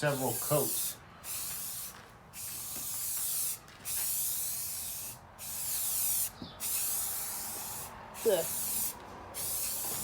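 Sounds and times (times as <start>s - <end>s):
spray paint can hissing: 0.0s - 10.0s.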